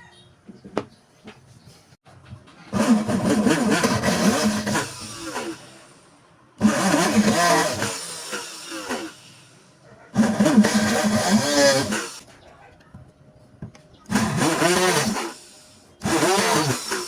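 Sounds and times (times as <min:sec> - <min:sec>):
electric drill motor whining: 0:02.7 - 0:06.0, 0:06.6 - 0:09.6, 0:10.2 - 0:12.2, 0:14.1 - 0:17.0.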